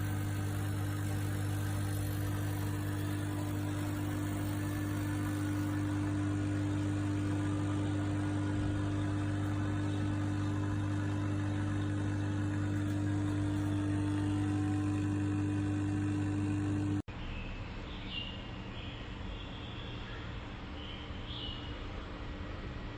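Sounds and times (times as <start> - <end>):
coffee machine pump humming: 0.0 - 17.1.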